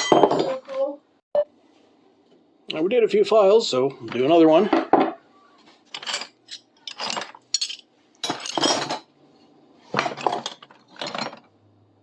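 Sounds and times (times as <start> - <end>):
steel hand tools clinking and scraping: 5.9 - 9.0.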